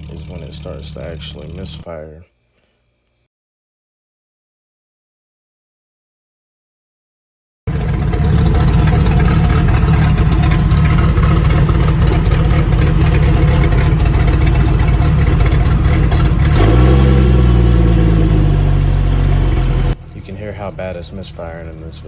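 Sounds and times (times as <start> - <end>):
engine idling roughly and misfiring: 0.0 - 1.8, 7.7 - 22.0.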